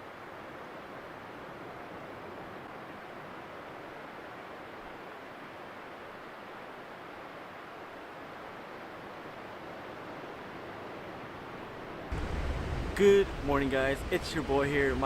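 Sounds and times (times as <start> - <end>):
ocean surf on beach: 0.0 - 15.0.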